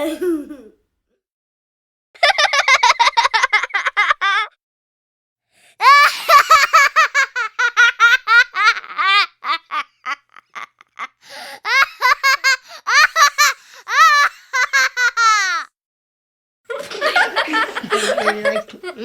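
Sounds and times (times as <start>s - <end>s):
young child laughing: 0.0s - 0.8s, 5.8s - 15.7s, 16.8s - 19.0s.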